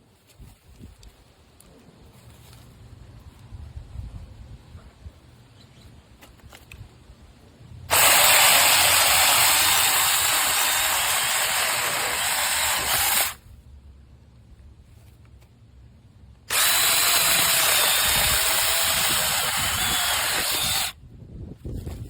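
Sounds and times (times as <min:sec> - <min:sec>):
electric chainsaw running: 0:07.9 - 0:13.4, 0:16.5 - 0:21.0.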